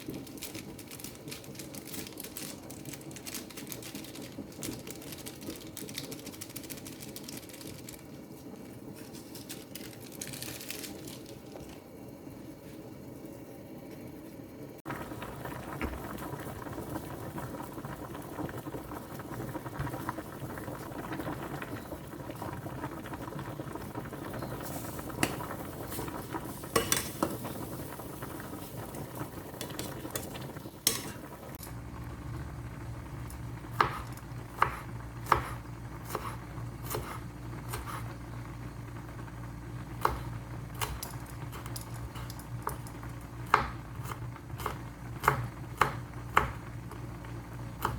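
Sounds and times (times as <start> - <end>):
steady low hum: 11.2 - 47.9
food sizzling in a pan: 14.9 - 47.9.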